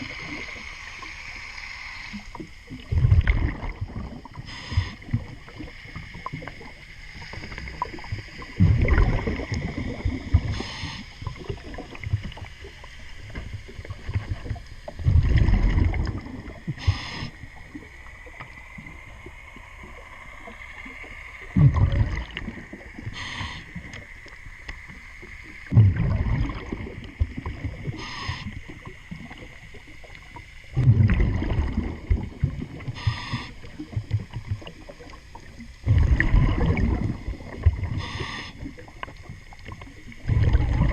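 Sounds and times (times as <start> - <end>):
regulator inhalation hiss: 0.0 - 2.3, 4.4 - 5.2, 10.4 - 11.2, 16.8 - 17.6, 23.0 - 24.0, 27.9 - 28.7, 32.9 - 33.7, 37.9 - 38.7
exhaled bubbles gurgling: 0.0 - 40.9.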